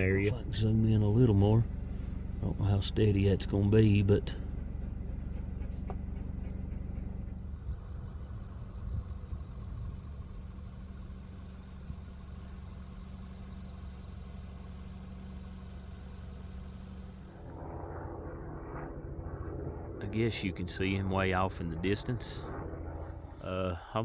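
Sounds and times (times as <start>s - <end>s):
low rumble: 0.0s - 24.0s
high insect trill: 7.3s - 24.0s
insects chirping: 7.3s - 24.0s.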